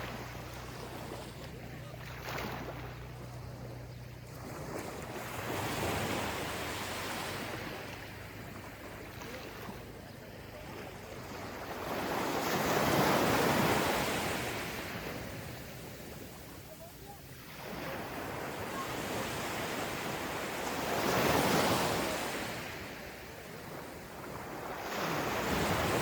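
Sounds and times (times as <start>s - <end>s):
ocean waves on beach: 0.0s - 26.0s.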